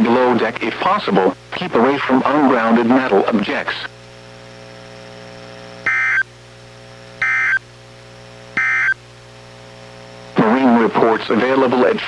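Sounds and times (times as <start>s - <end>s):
electrical hum: 0.0s - 12.0s
warbling data tones: 5.9s - 6.3s, 7.2s - 7.6s, 8.6s - 9.0s.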